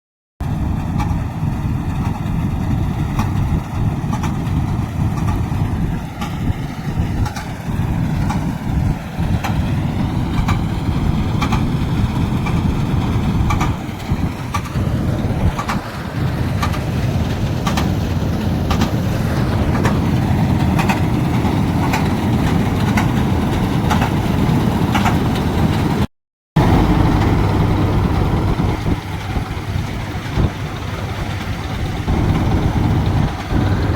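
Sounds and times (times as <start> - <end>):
combine harvester engine rumbling: 0.4 - 33.9
machine clicks and rattles: 10.3 - 25.9.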